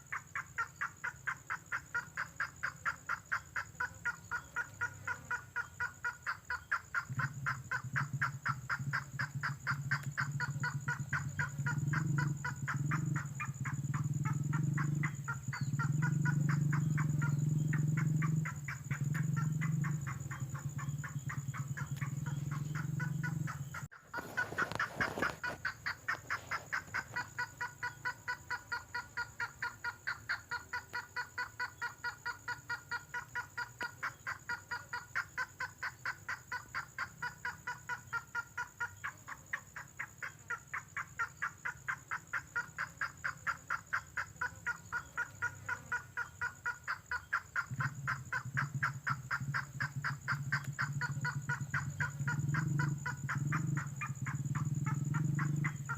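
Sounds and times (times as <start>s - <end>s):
bird rapid repeated calls: 0.0s - 55.9s.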